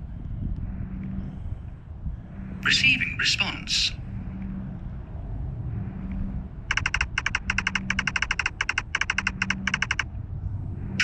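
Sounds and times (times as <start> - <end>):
low steady hum: 0.0 - 11.0
rapid electronic beeping: 6.7 - 10.1.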